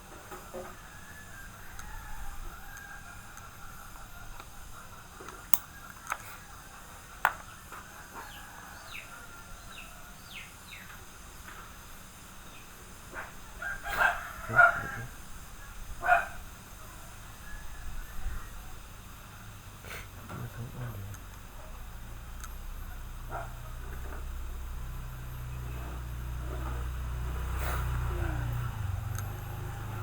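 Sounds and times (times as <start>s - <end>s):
loud animal calls: 13.1s - 15.5s.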